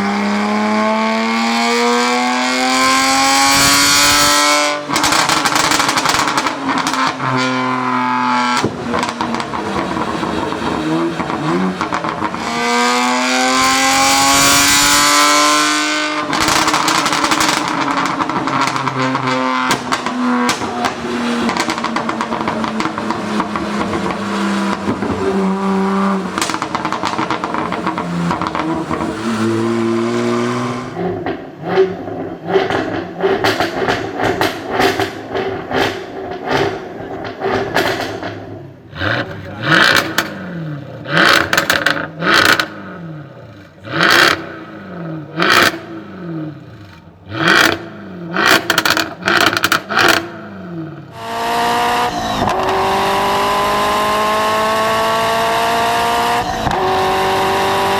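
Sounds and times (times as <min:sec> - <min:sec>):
car engine revving: 0:00.0 - 0:57.9
sharp exhaust bangs: 0:01.3 - 0:57.9
exhaust pops and crackles: 0:03.6 - 0:46.0, 0:46.6 - 0:51.2, 0:56.1 - 0:57.6.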